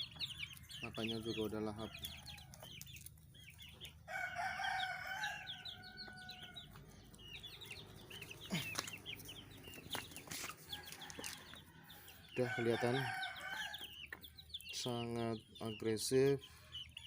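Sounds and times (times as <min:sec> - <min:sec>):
chickens chirping: 0:00.0 - 0:17.0
rooster crowing: 0:04.1 - 0:06.6, 0:10.7 - 0:13.9.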